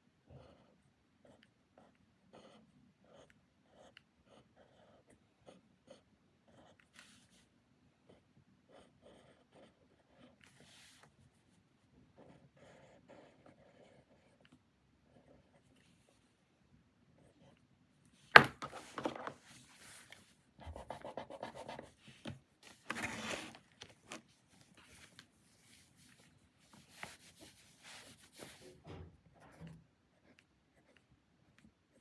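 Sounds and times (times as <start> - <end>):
paper rustling and scraping: 22.6 - 28.8.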